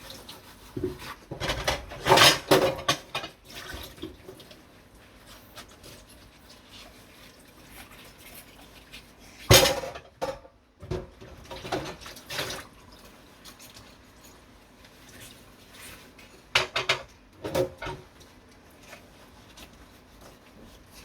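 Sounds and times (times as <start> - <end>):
dishes clattering: 1.4 - 3.4, 16.5 - 18.1
dishes clinking: 16.6 - 18.0.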